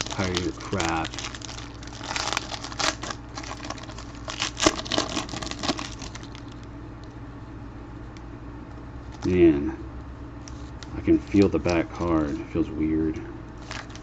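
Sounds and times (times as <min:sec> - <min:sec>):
plastic wrapping crinkling and tearing: 0:00.0 - 0:06.7, 0:11.1 - 0:12.6, 0:13.6 - 0:14.0.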